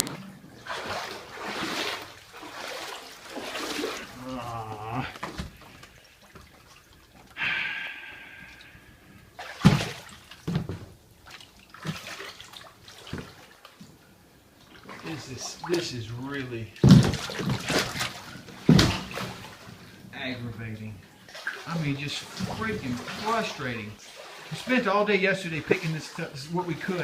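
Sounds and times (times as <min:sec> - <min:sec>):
water sloshing and splashing: 0:00.0 - 0:27.0
sharp splash or knock: 0:09.4 - 0:10.8, 0:16.8 - 0:19.4.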